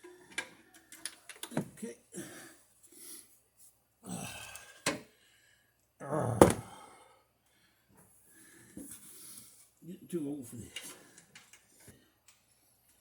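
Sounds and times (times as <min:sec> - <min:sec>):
man grunting and breathing: 0:04.0 - 0:04.8, 0:06.0 - 0:07.1
sharp knocks: 0:06.4 - 0:06.6.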